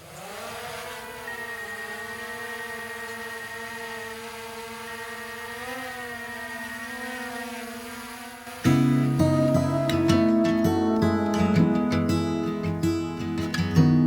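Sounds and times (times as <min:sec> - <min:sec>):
drone propellers whirring: 0:00.0 - 0:11.0.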